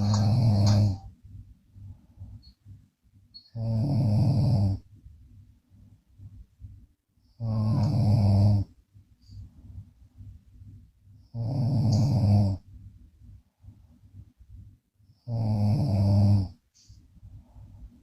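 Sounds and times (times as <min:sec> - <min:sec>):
woman snoring: 0:00.0 - 0:01.0, 0:03.6 - 0:04.8, 0:07.4 - 0:08.7, 0:11.4 - 0:12.6, 0:15.3 - 0:16.5.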